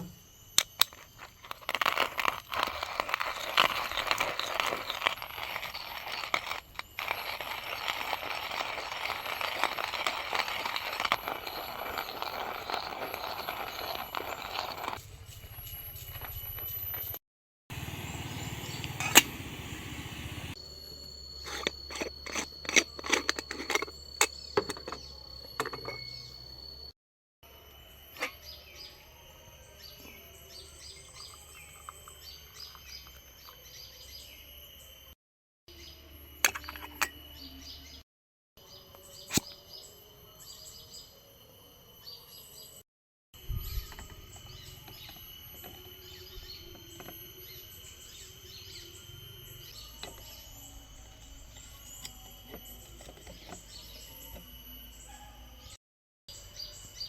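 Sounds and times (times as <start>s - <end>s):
steady high-pitched whine: 0.0s - 38.0s, 43.4s - 57.0s
birds chirping: 17.7s - 20.6s.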